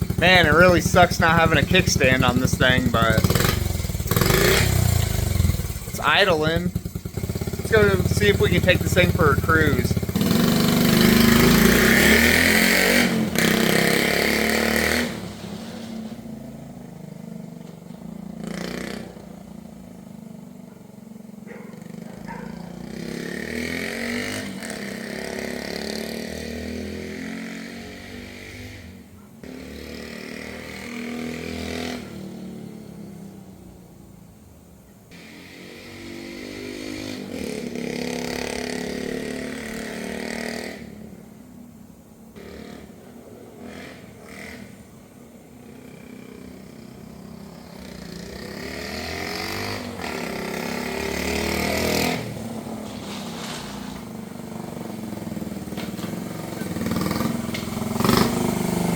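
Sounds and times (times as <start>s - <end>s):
mini bike engine running: 0.0s - 15.2s, 20.8s - 28.8s, 45.7s - 58.9s.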